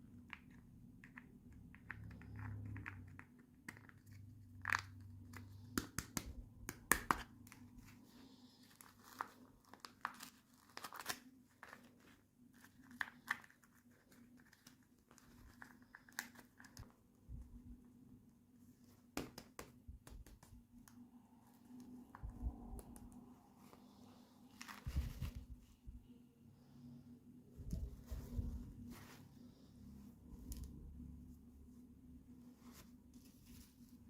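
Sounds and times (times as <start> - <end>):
faint steady hum: 0.0 - 34.0
packaging crinkling and tearing: 8.7 - 16.9.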